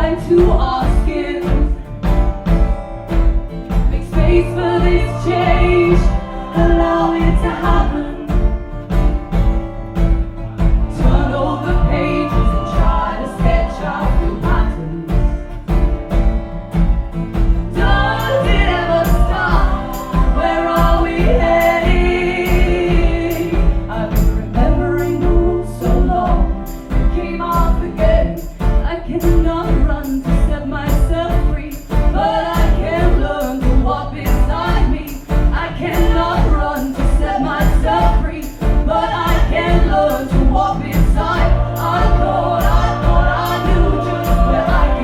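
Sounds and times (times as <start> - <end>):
live band with drum beat: 0.0 - 45.0
choir singing: 4.0 - 9.5, 10.5 - 15.4, 17.7 - 27.9, 32.1 - 45.0.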